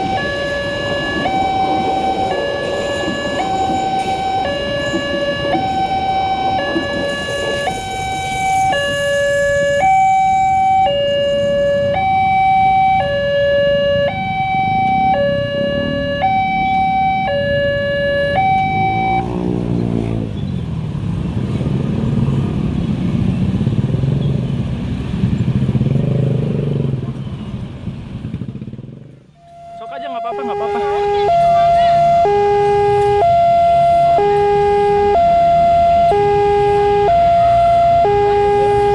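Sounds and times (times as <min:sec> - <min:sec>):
level crossing two-tone siren: 0:00.0 - 0:20.2, 0:29.4 - 0:38.9
passing road vehicle engines: 0:00.0 - 0:38.9.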